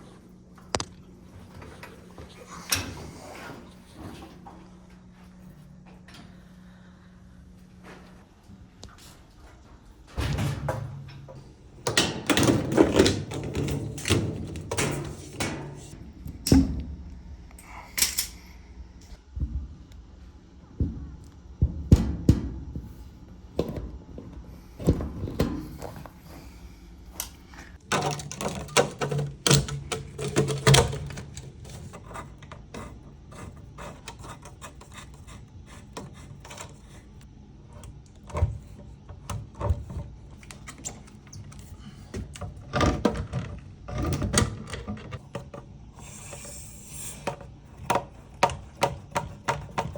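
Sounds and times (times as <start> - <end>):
knocks and rattles of washing machine: 9.4 - 17.1, 20.7 - 26.4, 27.8 - 33.7, 38.2 - 45.8, 47.2 - 49.9.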